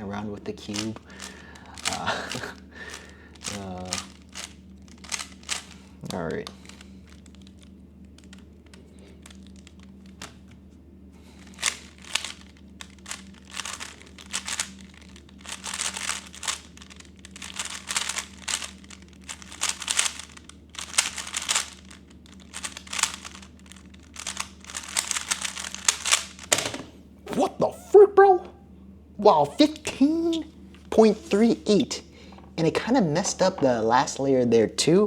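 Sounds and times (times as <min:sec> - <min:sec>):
faint low hum: 0:00.0 - 0:35.0
puzzle cube clicking and rattling: 0:00.7 - 0:10.5, 0:11.4 - 0:26.7.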